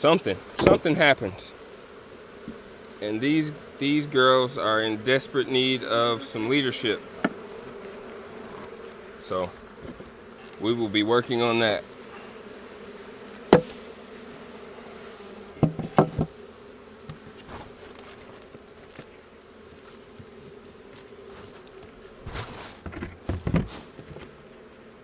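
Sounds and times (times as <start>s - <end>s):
honeybees buzzing: 0.0s - 25.0s
sharp knocks on hive: 0.5s - 1.2s, 2.4s - 2.7s, 6.4s - 9.0s, 9.6s - 10.4s, 13.4s - 13.9s, 15.5s - 18.6s, 22.2s - 24.4s.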